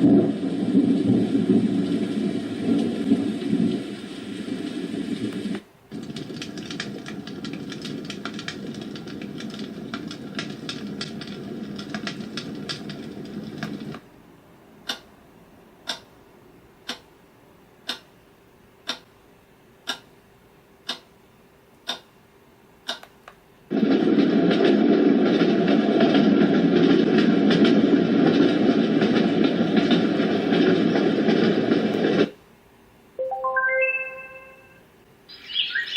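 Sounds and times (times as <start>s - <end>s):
white noise with crackling clicks: 0.0s - 35.9s
clock ticking: 14.8s - 15.1s, 15.8s - 16.2s, 16.8s - 17.1s, 17.8s - 18.2s, 18.8s - 19.2s, 19.8s - 20.2s, 20.8s - 21.1s, 21.8s - 22.1s, 22.8s - 23.2s.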